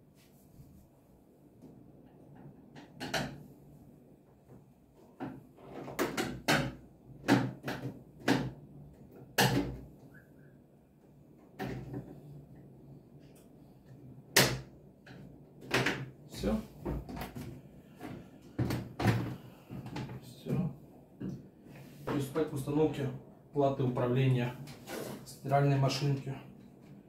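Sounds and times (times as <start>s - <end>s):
knocks and clicks of parts: 2.1s - 3.5s, 5.2s - 9.8s.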